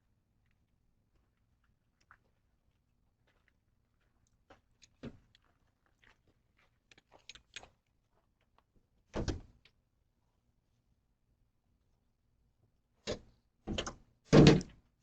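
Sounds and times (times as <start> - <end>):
door shutting thunk: 13.7 - 14.7.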